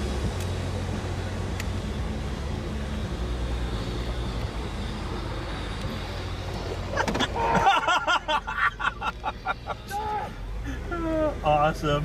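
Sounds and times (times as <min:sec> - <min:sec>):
truck engine droning: 0:00.0 - 0:12.0.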